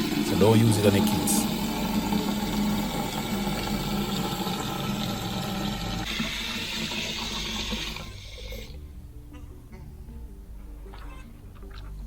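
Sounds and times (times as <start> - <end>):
pressure washer motor hum: 0.0 - 8.1
water jet hissing: 0.0 - 8.8.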